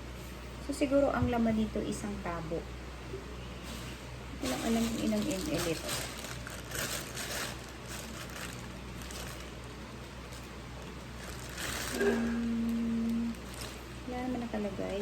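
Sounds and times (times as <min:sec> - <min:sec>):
steady low hum: 0:00.0 - 0:15.0
rustling handling noises: 0:03.6 - 0:15.0
woman humming a vowel: 0:12.0 - 0:13.4.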